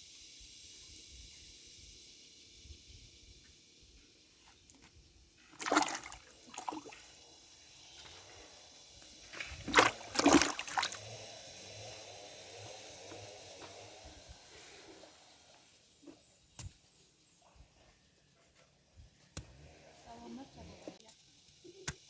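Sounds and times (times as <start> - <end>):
faint water trickle: 4.3 - 12.0
water splashing: 5.6 - 7.1, 9.3 - 11.1.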